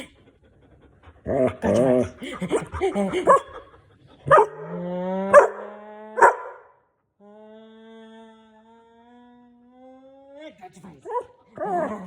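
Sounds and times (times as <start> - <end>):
puppy barking and howling: 11.1 - 12.0.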